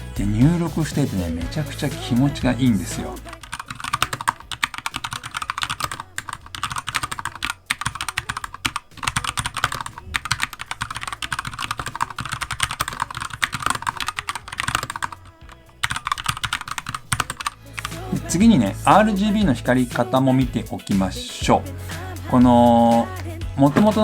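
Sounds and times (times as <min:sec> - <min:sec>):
mechanical keyboard typing: 0:02.0 - 0:18.3.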